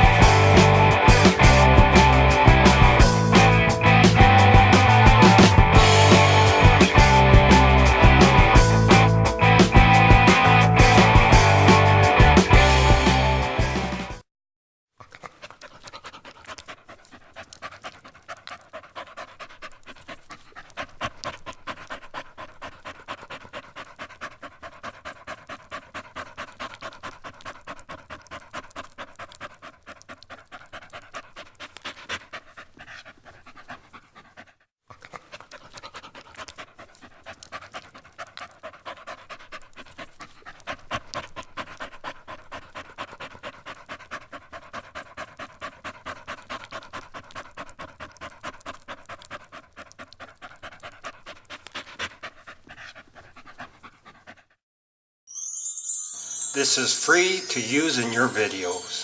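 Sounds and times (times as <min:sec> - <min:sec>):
dog panting: 0:00.0 - 0:14.2, 0:15.0 - 0:54.6, 0:55.8 - 0:59.0.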